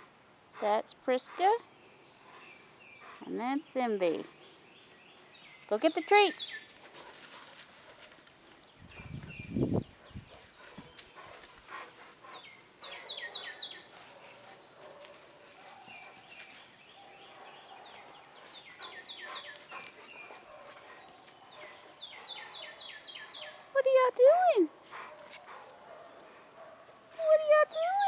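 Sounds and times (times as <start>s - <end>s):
dogs moving with soft clicks: 6.7s - 8.8s, 10.3s - 13.1s, 13.8s - 22.4s, 24.9s - 27.3s.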